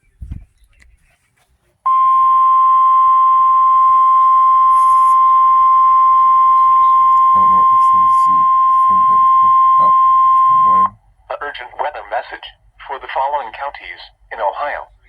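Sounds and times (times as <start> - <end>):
steady warning alarm tone: 1.9 - 11.0.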